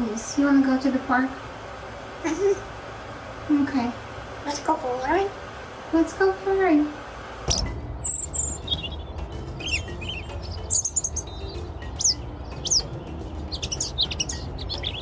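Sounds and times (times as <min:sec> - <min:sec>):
low steady hum: 0:00.0 - 0:15.0
bird chirping: 0:07.5 - 0:15.0
downward-sweeping bird whistles: 0:07.5 - 0:15.0.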